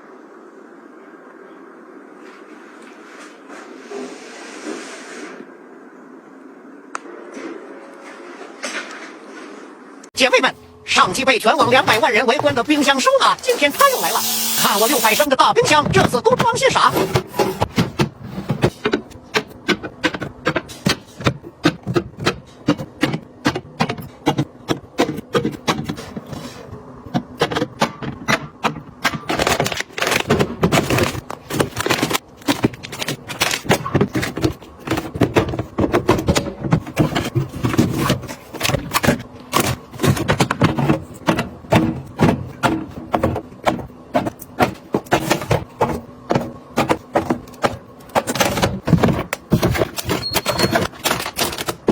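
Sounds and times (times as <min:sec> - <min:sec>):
plastic containers clicking and knocking: 0:15.7 - 0:51.9.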